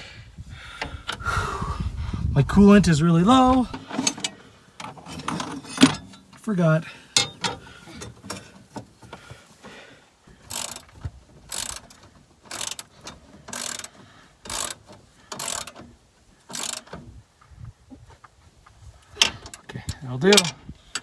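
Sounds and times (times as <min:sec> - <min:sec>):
ratchet wrench clicking: 0:10.5 - 0:10.9, 0:11.5 - 0:15.8, 0:16.5 - 0:17.0.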